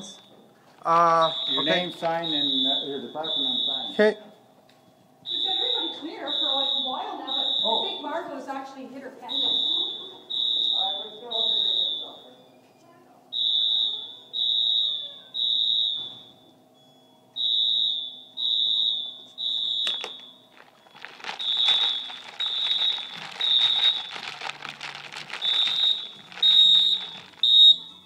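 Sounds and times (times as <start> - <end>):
fire alarm horn beeping: 0.0 - 4.4, 5.1 - 12.7, 13.3 - 24.4, 25.3 - 28.0
dense crackling noise: 20.0 - 27.7.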